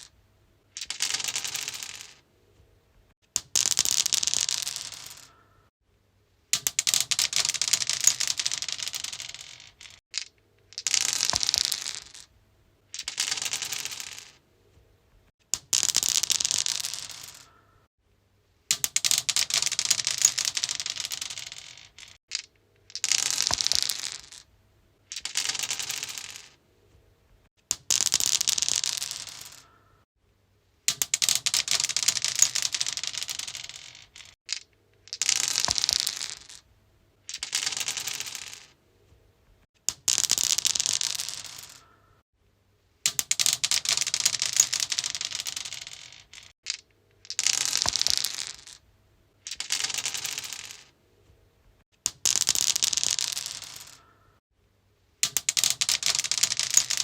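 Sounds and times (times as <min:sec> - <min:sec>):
dice rattling on stone: 0:00.8 - 0:02.2, 0:03.4 - 0:05.3, 0:06.6 - 0:12.3, 0:12.9 - 0:14.4, 0:15.6 - 0:17.5, 0:18.7 - 0:24.5, 0:25.1 - 0:26.6, 0:27.7 - 0:29.7, 0:30.9 - 0:36.6, 0:37.2 - 0:38.8, 0:39.9 - 0:41.9, 0:43.1 - 0:48.8, 0:49.4 - 0:51.0, 0:52.0 - 0:54.2, 0:55.2 - 0:57.0.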